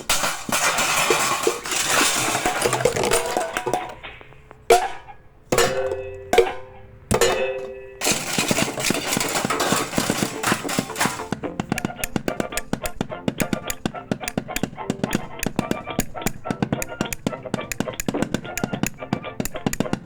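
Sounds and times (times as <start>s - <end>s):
long rattling clatter: 0.0s - 3.9s, 7.1s - 11.7s
clattering crash: 0.0s - 20.0s
sharp hits: 0.0s - 20.0s.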